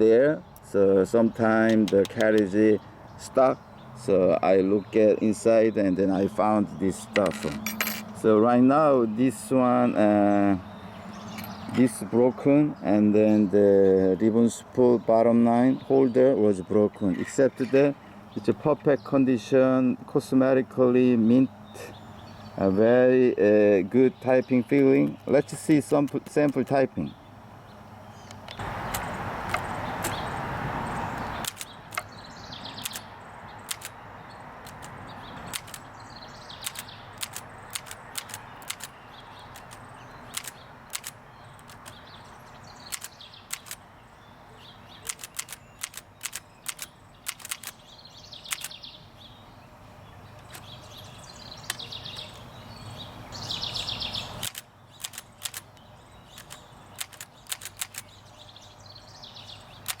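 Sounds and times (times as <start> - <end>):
typewriter mechanical rattles: 32.8 - 33.0, 33.6 - 34.0, 34.6 - 35.9, 36.6 - 42.0, 42.8 - 43.8, 45.0 - 47.8, 48.5 - 48.8, 54.4 - 58.2
typewriter keys striking: 33.7 - 34.0, 34.6 - 35.9, 36.6 - 39.0, 39.6 - 42.0, 42.9 - 43.8, 45.0 - 47.8, 54.4 - 55.7, 56.3 - 58.1.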